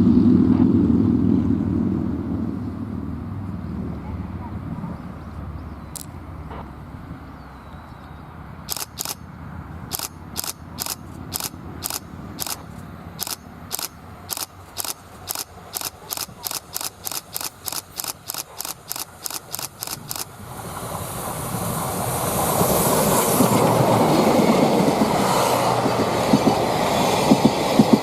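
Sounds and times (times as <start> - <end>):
low steady rumble: 0.0 - 4.1
camera shutters clicking: 8.7 - 9.2, 9.9 - 20.3.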